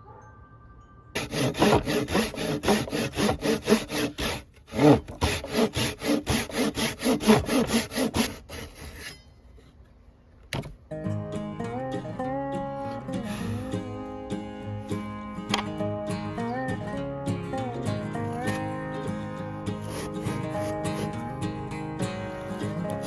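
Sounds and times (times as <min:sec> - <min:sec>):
hand saw cutting wood: 0:01.2 - 0:09.2, 0:19.7 - 0:21.4, 0:22.6 - 0:23.0
acoustic guitar music: 0:10.9 - 0:23.0.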